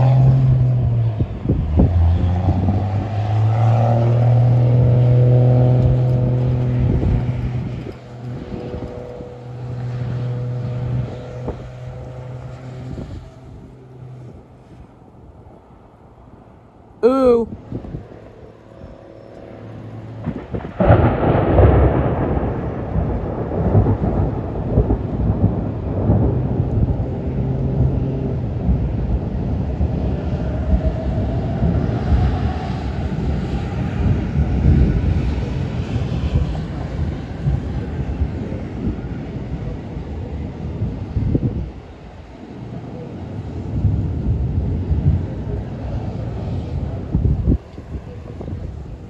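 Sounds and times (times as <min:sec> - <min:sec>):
thunder rumbling: 0:00.0 - 0:14.4, 0:18.8 - 0:49.0
loud thunder crack: 0:20.2 - 0:27.1.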